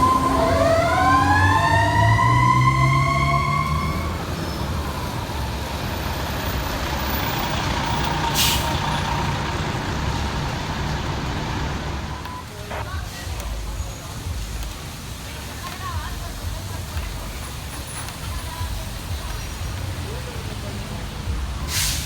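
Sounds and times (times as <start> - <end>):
fire truck siren: 0.0 - 12.8
diesel engine rumble: 0.0 - 22.0
air brake hiss: 8.3 - 9.0, 21.6 - 22.0.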